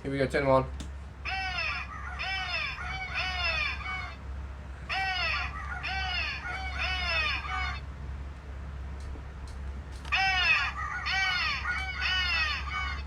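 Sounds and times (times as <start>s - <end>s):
toy squawking bird call: 1.2s - 4.2s, 4.9s - 7.8s, 10.1s - 13.0s.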